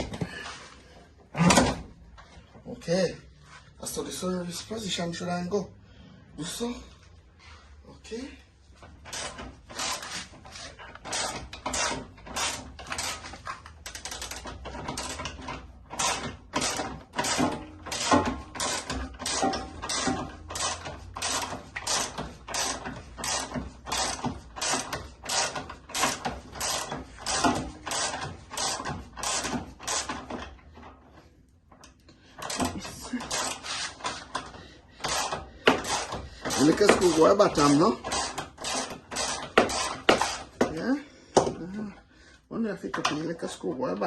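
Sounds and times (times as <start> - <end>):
hand ratchet wrench clicking: 9.1 - 30.6, 31.8 - 40.5.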